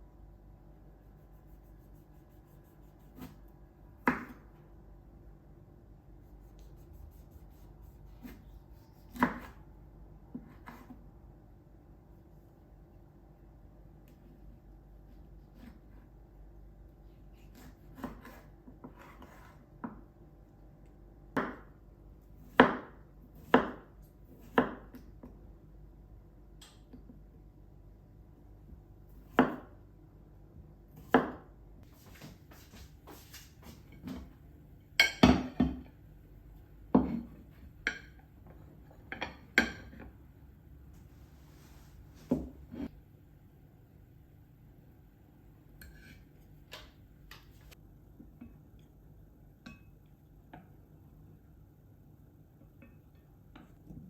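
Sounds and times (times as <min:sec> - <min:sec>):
knife chopping on a cutting board: 0:02.2 - 0:03.4, 0:04.0 - 0:04.6, 0:08.2 - 0:09.6, 0:10.3 - 0:11.0, 0:17.4 - 0:20.1, 0:21.3 - 0:21.8, 0:22.4 - 0:25.3, 0:29.2 - 0:29.8, 0:31.0 - 0:31.5, 0:36.9 - 0:38.1.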